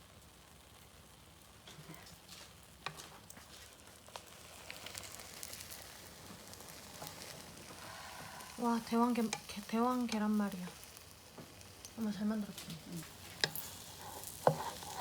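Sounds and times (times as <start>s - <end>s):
egg sizzling in a pan: 0.0s - 15.0s
utensil clicking against pan: 9.1s - 10.9s, 13.3s - 15.0s.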